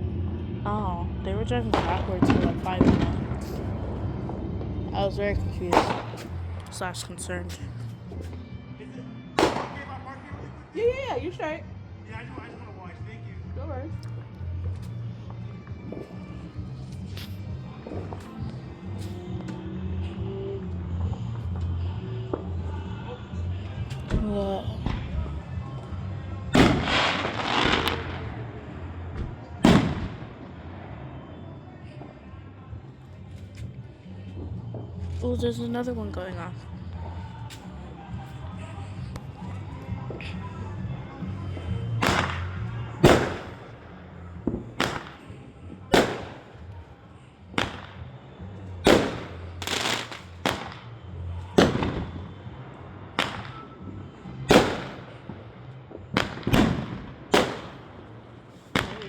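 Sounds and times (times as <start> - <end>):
fireworks exploding: 0.0 - 8.5, 9.3 - 11.2, 14.6 - 19.6, 26.4 - 32.2, 41.0 - 59.0.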